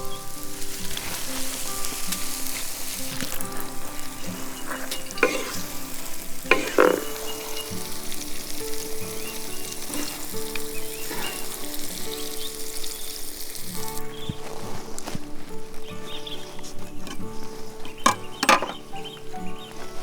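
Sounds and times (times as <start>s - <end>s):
food sizzling in a pan: 0.0s - 20.0s
utensil scraping and knocking: 0.9s - 7.6s, 16.6s - 19.0s.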